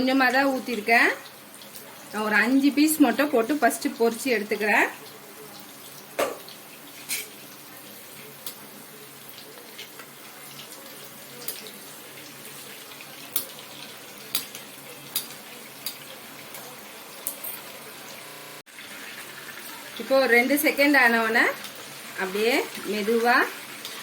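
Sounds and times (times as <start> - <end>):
dumplings sizzling in hot oil: 0.0 - 24.0
oil popping and crackling: 9.3 - 17.7.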